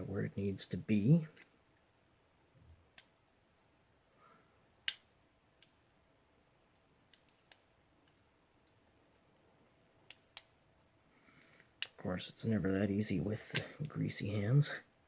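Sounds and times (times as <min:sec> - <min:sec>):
small metal clicks: 0:06.7 - 0:09.3.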